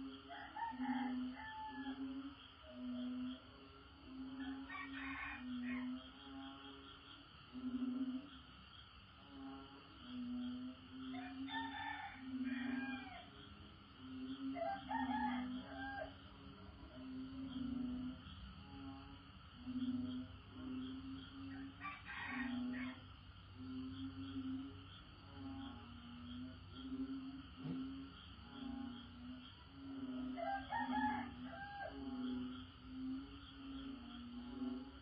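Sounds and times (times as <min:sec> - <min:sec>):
frogs calling: 0:00.0 - 0:35.0
insect chorus: 0:00.0 - 0:35.0
rooster crowing: 0:00.3 - 0:02.1, 0:04.4 - 0:06.0, 0:11.1 - 0:13.3, 0:14.5 - 0:16.2, 0:21.5 - 0:23.0, 0:30.3 - 0:32.3.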